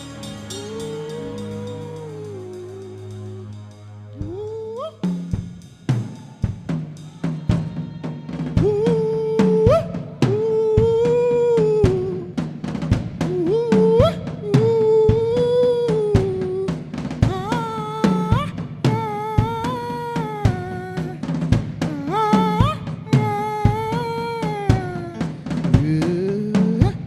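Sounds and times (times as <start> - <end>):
loud melody line: 0.0 - 6.0
drum kit playing: 0.0 - 27.0.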